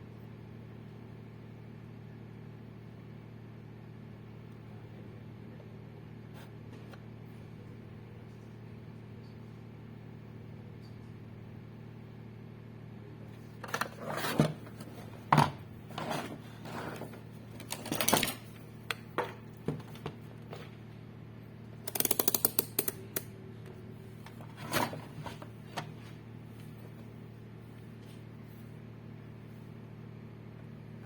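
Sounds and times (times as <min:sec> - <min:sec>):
steady low hum: 0:00.0 - 0:31.0
tools clicking and knocking: 0:17.6 - 0:18.6, 0:21.9 - 0:23.3
ratchet clicks: 0:21.8 - 0:23.3.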